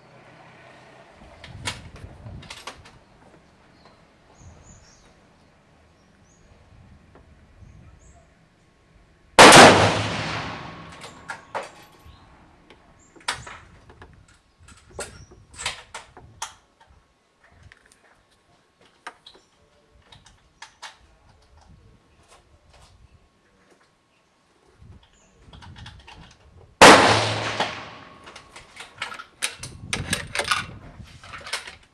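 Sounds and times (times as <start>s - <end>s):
rifle shot with echo: 9.4s - 11.3s, 26.8s - 28.3s.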